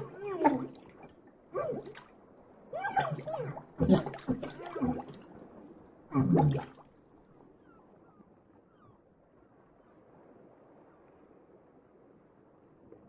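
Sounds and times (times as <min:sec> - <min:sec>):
person choking and gurgling: 0:00.0 - 0:00.8, 0:01.6 - 0:02.0, 0:02.8 - 0:05.2, 0:06.1 - 0:06.8
water splashing: 0:00.0 - 0:02.1, 0:02.8 - 0:05.4, 0:06.1 - 0:06.8.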